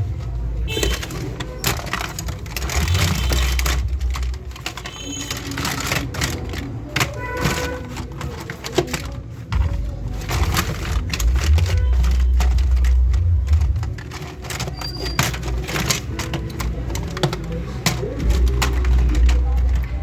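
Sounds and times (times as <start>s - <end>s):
plastic parts clicking and knocking: 0.0s - 20.0s
steady low rumble: 10.9s - 14.0s.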